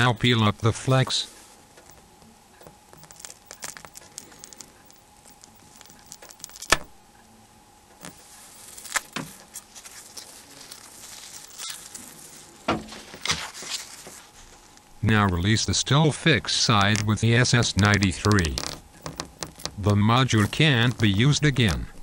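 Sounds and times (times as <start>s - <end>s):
faint crackling of peeling adhesive: 8.0s - 15.4s, 16.7s - 21.9s.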